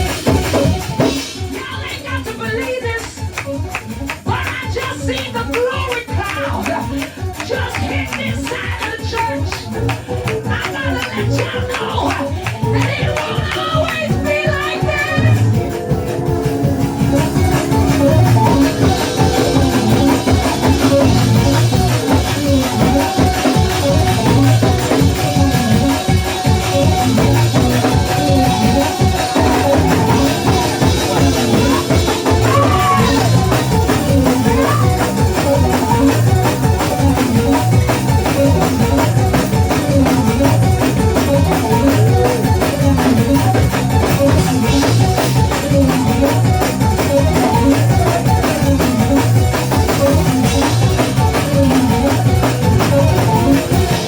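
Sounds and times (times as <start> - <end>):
drum kit beat: 0.0 - 54.0
live gospel music: 0.0 - 54.0.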